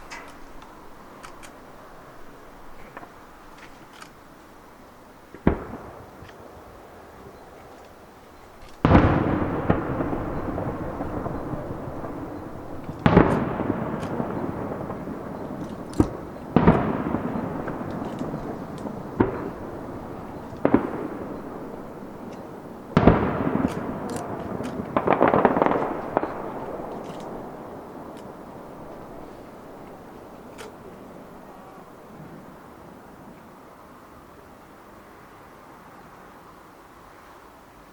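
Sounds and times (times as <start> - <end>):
firework shells bursting with echo: 0.0 - 1.7, 5.3 - 33.5
firework crackling: 0.0 - 35.4.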